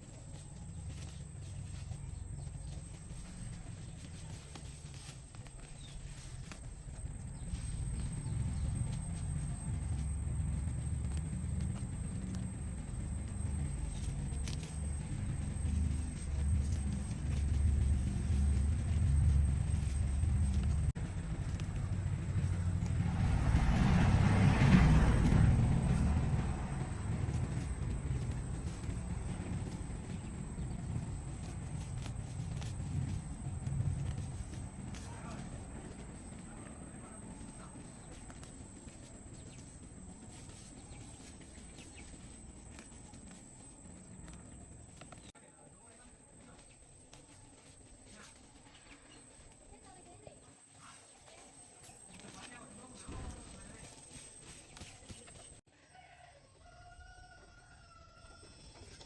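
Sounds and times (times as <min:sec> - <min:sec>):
light clicks and rustles: 0:00.0 - 0:55.6
engine rumbling: 0:00.0 - 0:55.7
rushing noise: 0:07.0 - 0:42.9.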